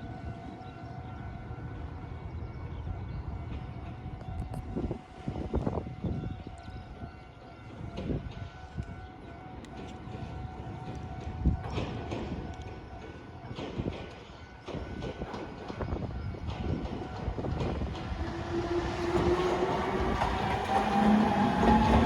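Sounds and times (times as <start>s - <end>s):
train rumbling and thumping: 7.8s - 9.0s, 9.7s - 22.0s.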